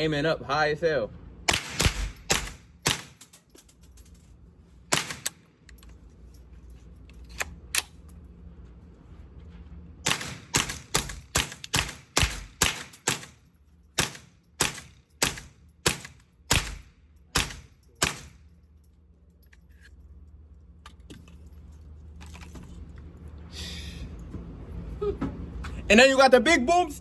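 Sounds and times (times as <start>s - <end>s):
gunshots: 1.5s - 3.2s, 4.9s - 5.4s, 10.0s - 13.4s, 14.0s - 18.4s.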